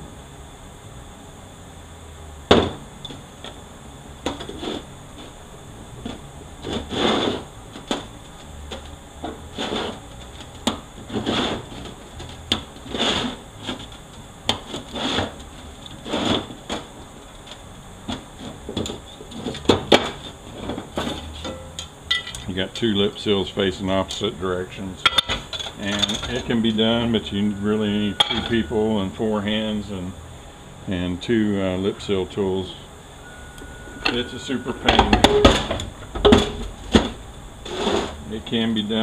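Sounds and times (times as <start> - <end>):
metal scraping slides: 6.6 - 7.5, 9.5 - 10.0, 11.1 - 12.0, 12.8 - 13.9, 35.1 - 38.3
metal parts clanking: 25.1 - 26.5.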